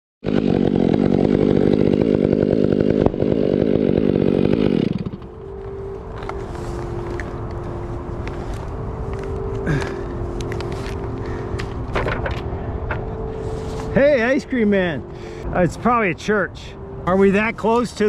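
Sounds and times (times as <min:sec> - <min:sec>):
chainsaw running: 0:00.2 - 0:06.4
warning chimes held tone: 0:05.2 - 0:18.0.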